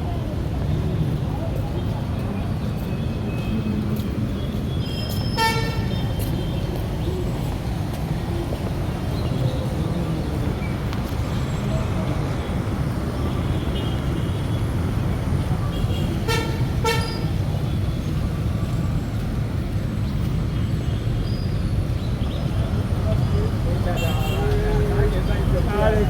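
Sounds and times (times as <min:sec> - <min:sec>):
street traffic rumble: 0:00.0 - 0:26.0
vehicle horn toots: 0:05.4 - 0:06.0, 0:15.9 - 0:17.4.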